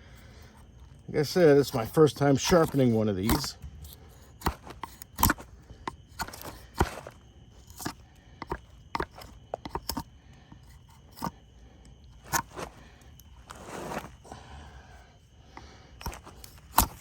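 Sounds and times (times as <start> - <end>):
drawknife scraping wood: 1.7 - 5.5, 6.1 - 10.1, 10.7 - 11.4, 12.2 - 12.7, 13.5 - 14.2, 16.0 - 17.0.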